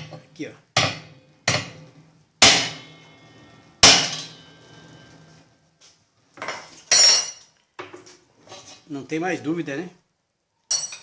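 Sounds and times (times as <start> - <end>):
hammer striking metal: 0.8 - 4.8.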